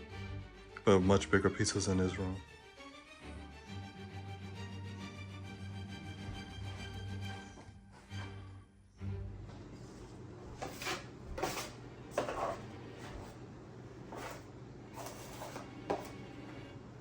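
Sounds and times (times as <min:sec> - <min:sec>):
drywall scraping and knocking: 0:10.5 - 0:13.4, 0:14.1 - 0:16.2.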